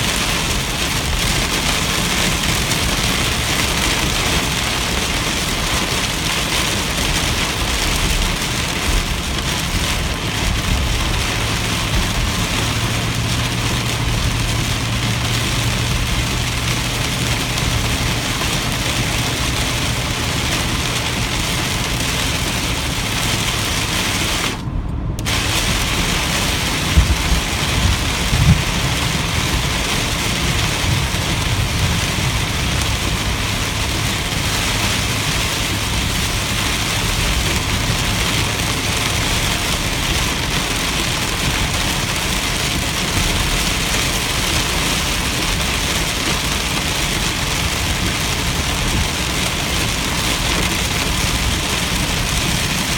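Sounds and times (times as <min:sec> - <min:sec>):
engine and road rumble: 0:00.0 - 0:52.9
heavy rain on a car: 0:00.0 - 0:52.9
low thumps: 0:26.8 - 0:29.3.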